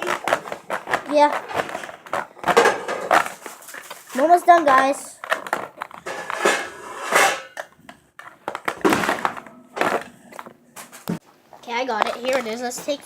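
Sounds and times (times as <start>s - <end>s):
packaging crinkling and tearing: 0.0s - 6.1s.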